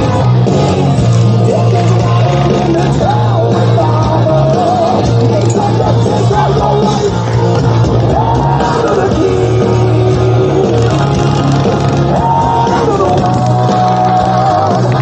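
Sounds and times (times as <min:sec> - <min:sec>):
bass line: 0:00.0 - 0:15.0
person singing long notes: 0:00.0 - 0:15.0
rock guitar: 0:00.0 - 0:15.0.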